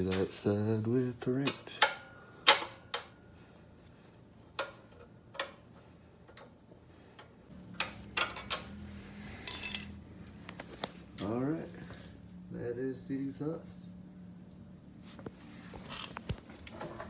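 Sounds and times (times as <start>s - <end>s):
ringing metal clink: 9.5s - 10.0s.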